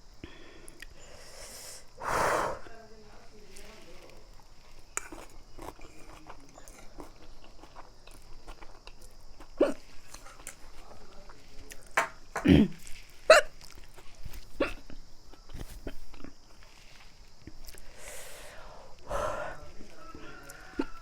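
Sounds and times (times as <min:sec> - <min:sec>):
clicking eating sounds: 0:00.6 - 0:01.0, 0:03.5 - 0:19.1, 0:19.8 - 0:21.0
woman hiccuping: 0:12.4 - 0:13.5.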